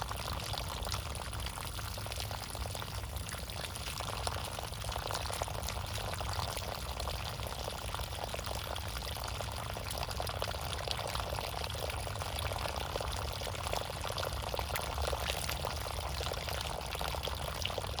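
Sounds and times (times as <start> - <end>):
water pouring and splashing: 0.0 - 8.9, 11.6 - 18.0.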